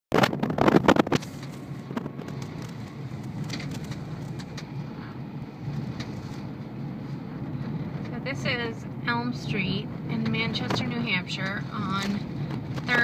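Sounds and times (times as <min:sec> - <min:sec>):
loud crackling burst: 0:00.1 - 0:04.5
traffic rumble: 0:00.1 - 0:13.0.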